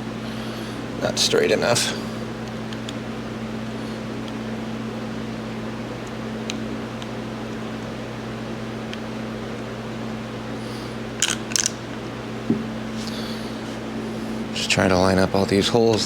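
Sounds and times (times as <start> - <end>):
fan humming: 0.0 - 16.0.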